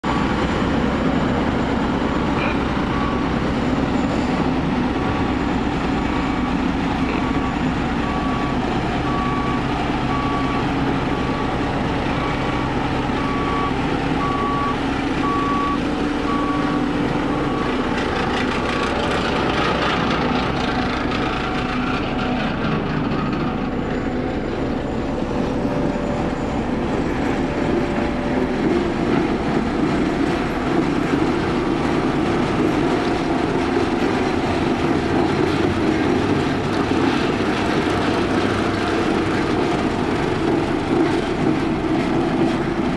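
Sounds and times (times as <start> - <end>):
diesel engine running: 0.0 - 42.9
reversing alarm beeping: 0.1 - 21.7.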